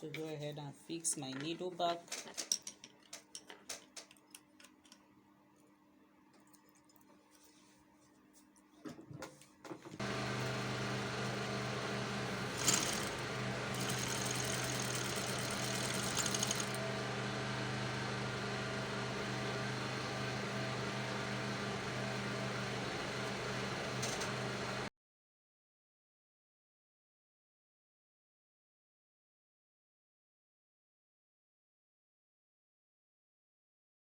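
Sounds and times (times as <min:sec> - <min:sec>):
sewing machine motor humming: 0:10.0 - 0:24.9
fast high rattling: 0:12.5 - 0:16.8.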